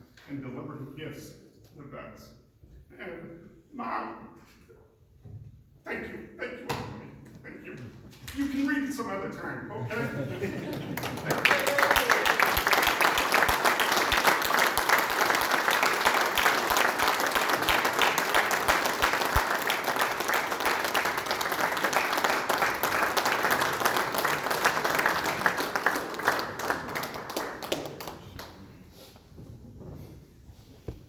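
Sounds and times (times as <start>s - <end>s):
audience applauding: 10.4s - 28.8s.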